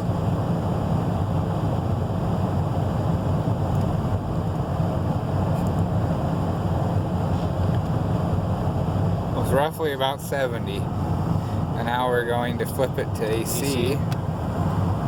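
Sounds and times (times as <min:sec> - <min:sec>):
car blower rushing air: 0:10.8 - 0:11.9.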